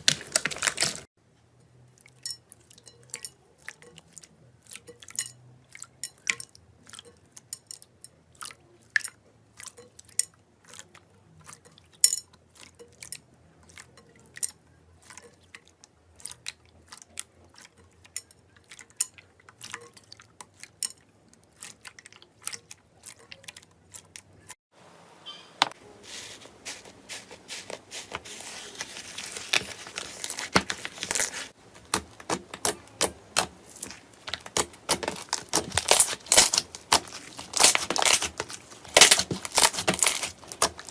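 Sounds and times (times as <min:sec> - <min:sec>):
slime squeezed popping and crackling: 0:31.9 - 0:40.9.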